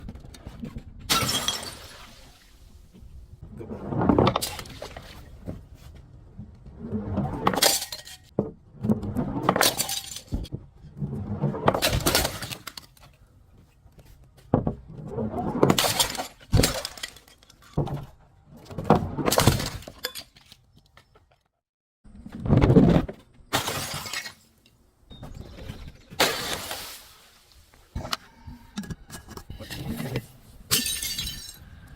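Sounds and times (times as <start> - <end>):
glass bottles breaking: 1.1 - 2.2, 7.6 - 8.3, 9.6 - 10.5, 15.7 - 17.5, 23.5 - 24.6, 30.7 - 31.7
glass pieces clinking: 30.7 - 31.7.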